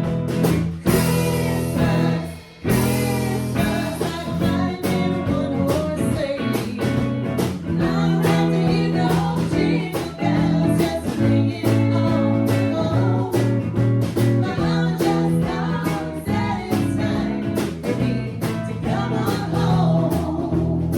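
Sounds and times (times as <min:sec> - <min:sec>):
guitar: 0:00.0 - 0:20.9
steady drum beat: 0:00.0 - 0:20.9
person singing: 0:00.9 - 0:07.0, 0:07.8 - 0:13.6.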